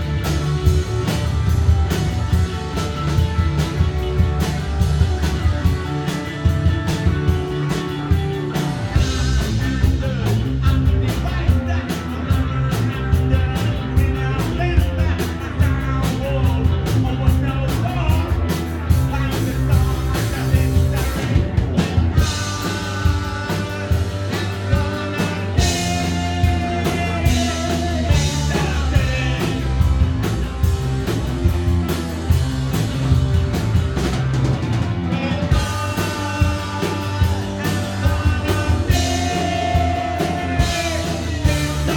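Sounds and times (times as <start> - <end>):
punk rock band playing: 0.0 - 41.9
voice or lead line: 7.5 - 30.2, 35.0 - 41.9.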